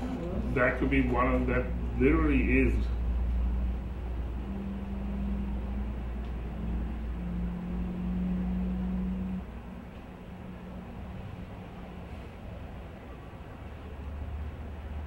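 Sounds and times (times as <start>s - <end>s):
low background rumble: 0.0s - 15.0s
steady humming tone: 0.0s - 15.0s.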